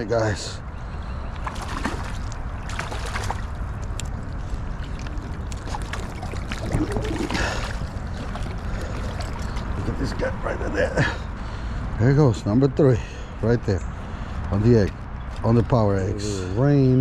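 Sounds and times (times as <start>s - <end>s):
wind noise: 0.7s - 12.6s
water noise: 1.3s - 11.4s
small splashes: 1.4s - 10.2s.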